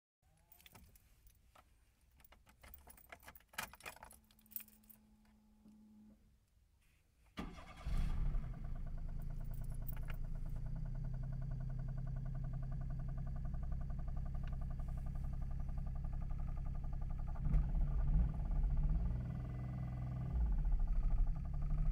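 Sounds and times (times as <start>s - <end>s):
keys jangling in ignition: 0.4s - 1.4s, 2.2s - 5.1s, 9.4s - 10.2s
car engine cranking and idling: 7.4s - 21.9s
engine knocking: 8.7s - 21.9s.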